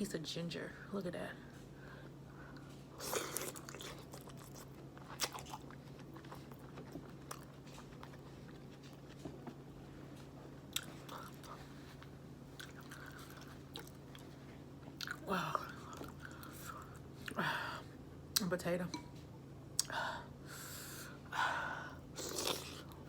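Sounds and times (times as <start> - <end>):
faint low hum: 0.0 - 23.0
person chewing wetly: 2.5 - 17.4, 22.1 - 23.0.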